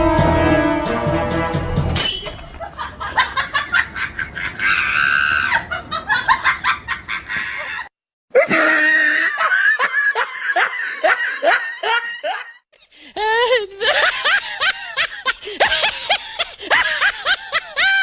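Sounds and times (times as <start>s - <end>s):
shrieking laughter: 2.6s - 12.6s, 13.3s - 18.0s.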